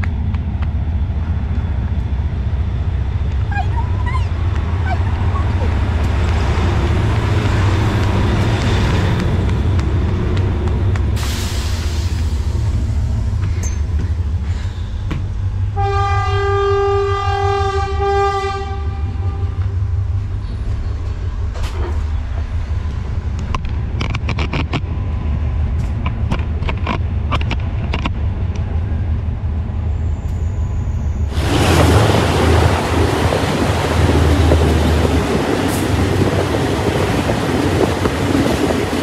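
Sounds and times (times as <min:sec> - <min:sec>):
train rumbling: 0:00.0 - 0:39.0
train horn blast: 0:15.7 - 0:19.8
loud rush of noise: 0:31.3 - 0:39.0.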